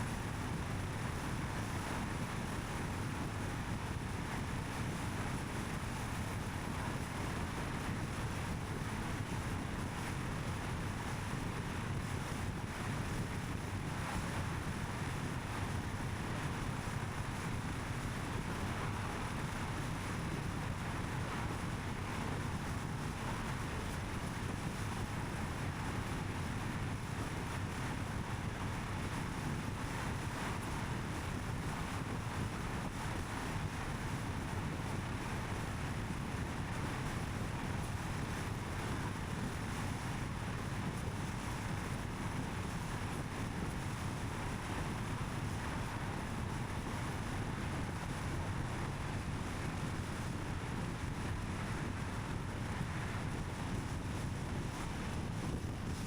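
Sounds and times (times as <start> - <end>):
wind rush: 46.9 - 56.0.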